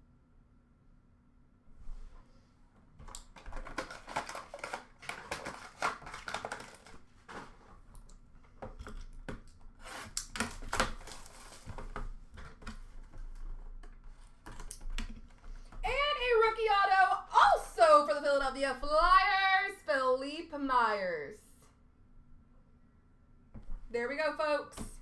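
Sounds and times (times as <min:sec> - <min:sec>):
trading cards clicking and rustling: 0:03.0 - 0:07.6.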